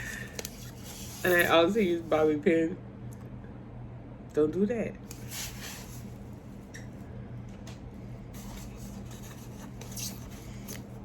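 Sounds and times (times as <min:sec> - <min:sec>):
rustling and handling noises: 0:00.0 - 0:02.2, 0:07.4 - 0:11.0
steady low hum: 0:00.0 - 0:11.0.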